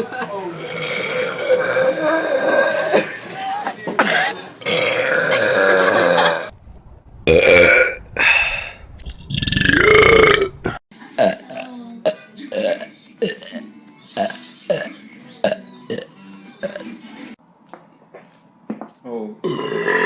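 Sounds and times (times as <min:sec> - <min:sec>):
people burping loudly: 0:00.5 - 0:03.4, 0:04.0 - 0:06.5, 0:07.3 - 0:17.0, 0:19.4 - 0:20.0.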